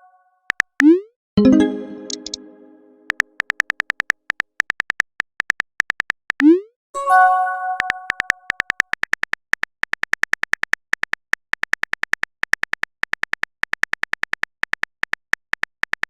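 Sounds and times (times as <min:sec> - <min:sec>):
message chime: 0:01.4 - 0:03.1, 0:07.0 - 0:08.3
phone keyboard typing clicks: 0:03.1 - 0:06.5, 0:07.8 - 0:16.0.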